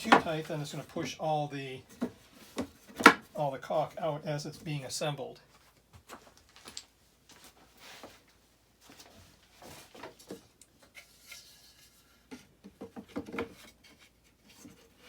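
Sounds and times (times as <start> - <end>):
wooden pieces knocking and rubbing: 0.0 - 1.1, 1.9 - 3.4.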